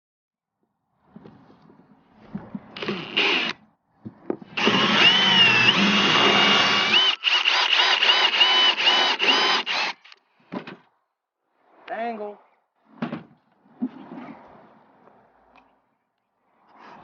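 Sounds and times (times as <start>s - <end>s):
power drill cutting sheet metal: 2.8s - 3.6s, 4.6s - 10.2s.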